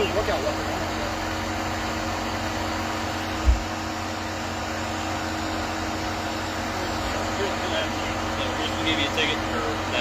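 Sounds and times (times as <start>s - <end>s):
mechanical hum and hiss: 0.0s - 10.0s
low thump: 3.4s - 3.7s.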